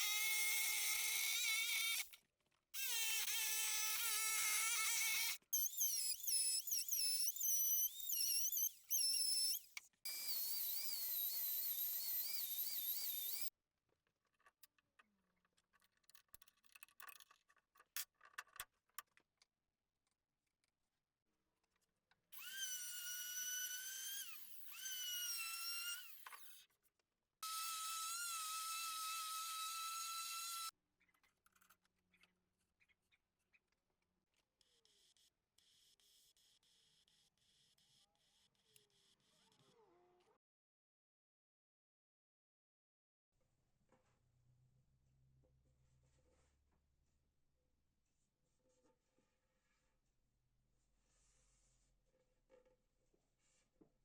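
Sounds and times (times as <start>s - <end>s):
power tool whining: 2.8s - 13.5s, 22.4s - 26.6s, 27.4s - 30.7s.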